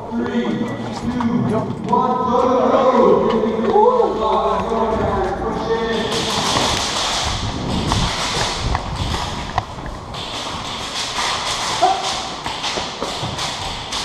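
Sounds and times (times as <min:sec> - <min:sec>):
running footsteps: 0:00.0 - 0:14.0.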